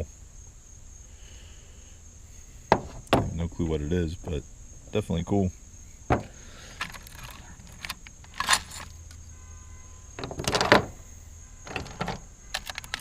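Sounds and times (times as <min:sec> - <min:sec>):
small metal parts rattling in a bin: 0:06.7 - 0:09.0, 0:11.7 - 0:13.0.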